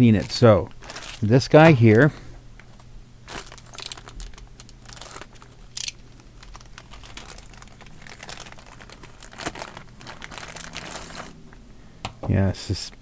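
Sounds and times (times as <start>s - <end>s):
plastic bag crinkling and rustling: 0.0s - 11.6s.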